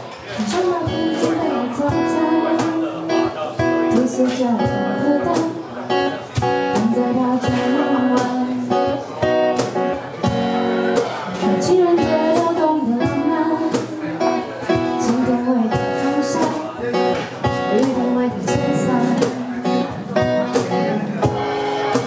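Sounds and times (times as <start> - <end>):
guitar strumming: 0.1 - 22.0
person singing: 0.4 - 5.6, 6.7 - 9.0, 11.3 - 14.3, 14.9 - 17.0, 17.6 - 21.2.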